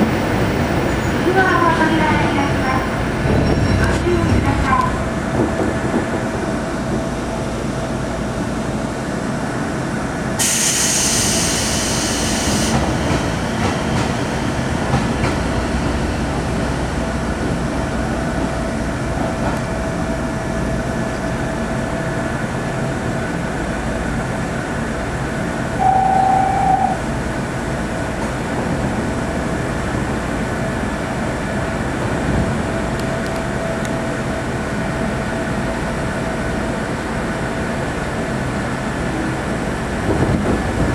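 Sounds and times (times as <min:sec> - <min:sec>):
train wheels rumbling on rails: 0:00.0 - 0:25.8, 0:26.5 - 0:40.9
hiss: 0:10.4 - 0:13.9
short one-pitched tone: 0:25.8 - 0:27.0.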